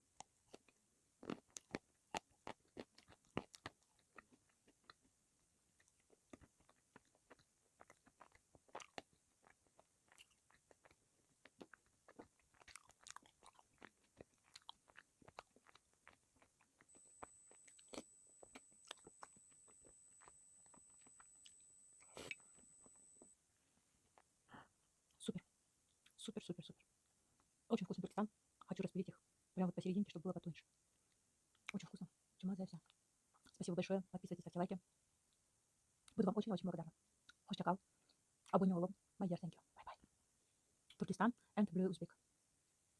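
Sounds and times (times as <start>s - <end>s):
chewing crunchy clay: 0.5s - 5.1s, 5.8s - 22.6s.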